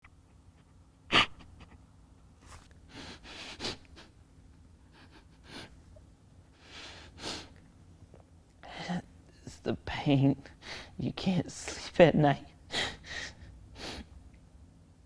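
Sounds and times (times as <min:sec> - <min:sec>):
person breathing and sniffing: 0:02.4 - 0:04.2, 0:04.9 - 0:05.8, 0:06.6 - 0:07.6, 0:12.7 - 0:14.1.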